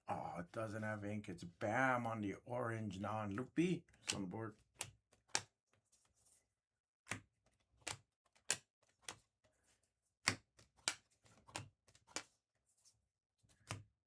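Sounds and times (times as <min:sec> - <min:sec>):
trading cards snapping: 0:04.0 - 0:05.5.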